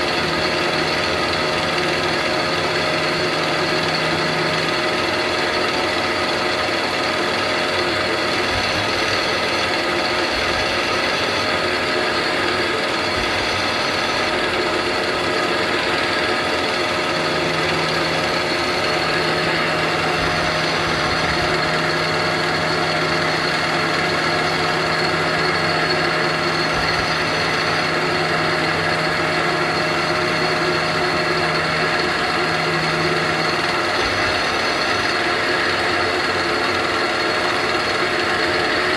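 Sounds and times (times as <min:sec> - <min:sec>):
lathe mechanical whir: 0:00.0 - 0:38.9
low hum: 0:10.4 - 0:35.7.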